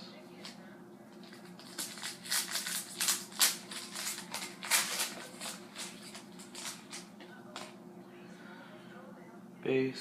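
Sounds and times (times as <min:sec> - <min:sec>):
foil wrapper crinkling: 0:01.2 - 0:07.7.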